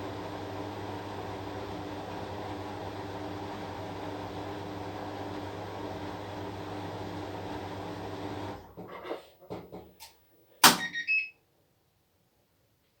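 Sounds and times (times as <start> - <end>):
washing machine humming: 0.0 - 8.9.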